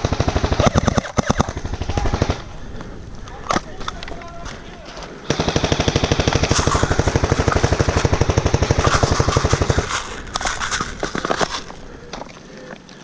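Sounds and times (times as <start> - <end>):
airsoft rifle full-auto burst: 0.0 - 2.6, 5.2 - 11.9.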